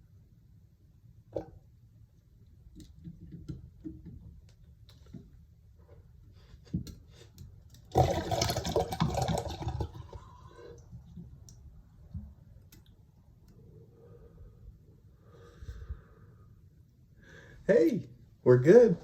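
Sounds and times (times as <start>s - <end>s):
water rushing out of bottle: 7.9s - 10.9s.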